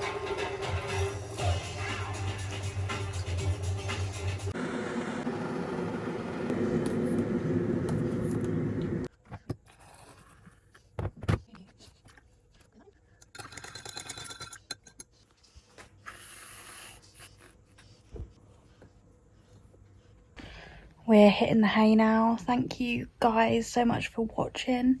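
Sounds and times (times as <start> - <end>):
television music: 0.0 - 4.6.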